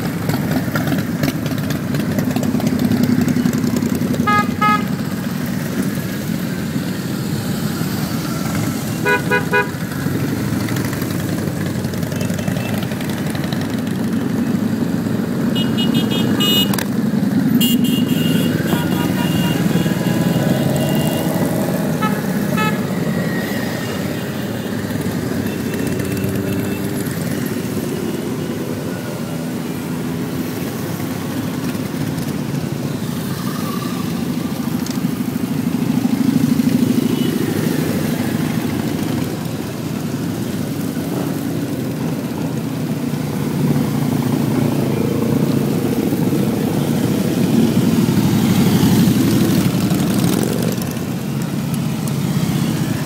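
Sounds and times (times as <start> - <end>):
motorcycle engine running: 0.0 - 33.2.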